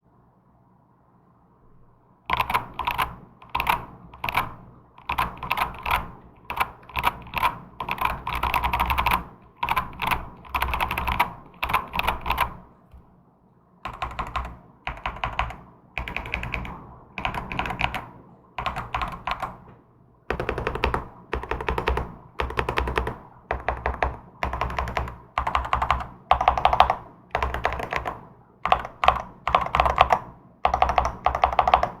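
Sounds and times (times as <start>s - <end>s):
mechanical keyboard typing: 2.3s - 12.6s, 13.9s - 19.6s, 20.3s - 32.0s.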